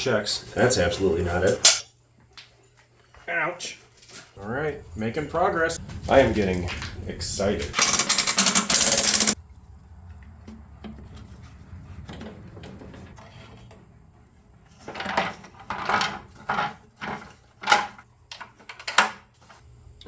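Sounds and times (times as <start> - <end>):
metal parts clinking: 1.4 - 2.0, 7.6 - 9.4
low hum: 4.5 - 7.8.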